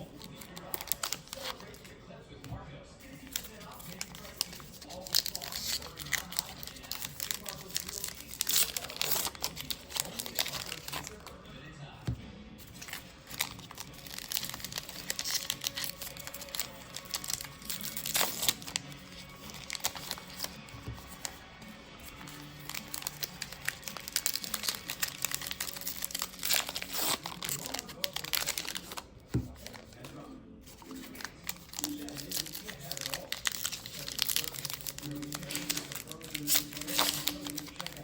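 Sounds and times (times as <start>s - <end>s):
wrappers crinkling and tearing: 0.0s - 2.0s, 3.0s - 11.4s, 12.6s - 21.4s, 22.0s - 30.1s, 30.7s - 38.0s
cards rustling: 0.0s - 11.4s, 12.0s - 38.0s.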